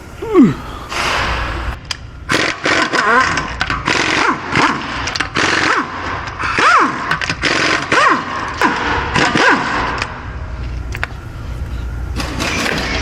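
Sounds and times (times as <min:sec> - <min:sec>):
pneumatic impact wrench whine: 0:00.0 - 0:10.2.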